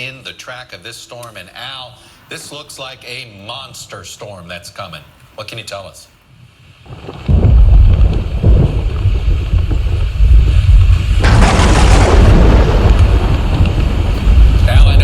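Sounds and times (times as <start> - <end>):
crackling thunder crash: 6.9 - 15.0
low thunder rumble: 6.9 - 15.0.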